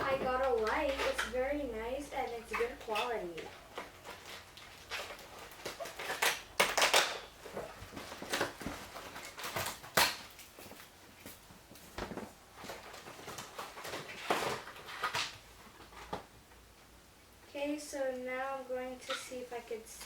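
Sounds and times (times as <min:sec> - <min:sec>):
packaging rustling: 0:02.2 - 0:16.3.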